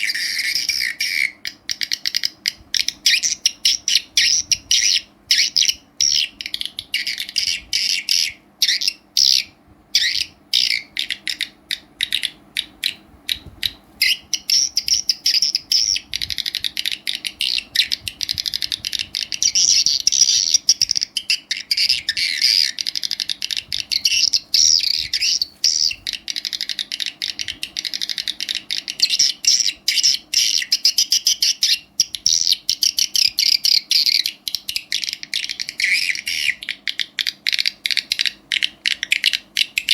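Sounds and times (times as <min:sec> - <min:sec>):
bird chirping through speaker: 0:00.0 - 0:39.9.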